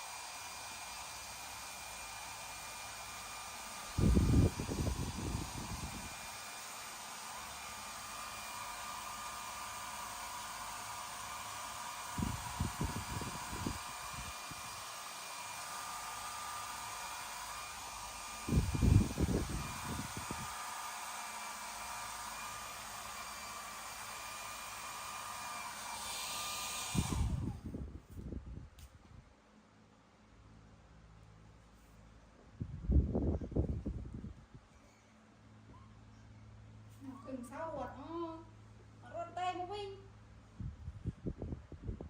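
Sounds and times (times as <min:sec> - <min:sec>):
small electric motor whirring: 0:00.0 - 0:27.8.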